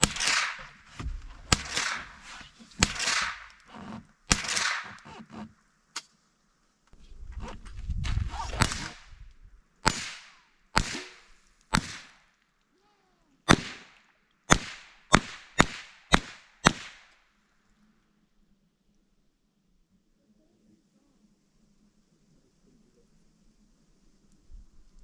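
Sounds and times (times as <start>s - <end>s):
rifle shots: 0.0s - 3.6s, 4.3s - 5.0s, 8.3s - 9.1s, 9.8s - 12.2s, 13.5s - 17.1s.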